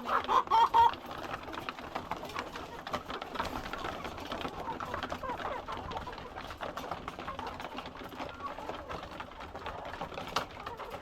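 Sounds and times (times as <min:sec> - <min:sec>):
hens soft calls: 0:00.0 - 0:01.1
hens pecking clicks: 0:00.0 - 0:11.0.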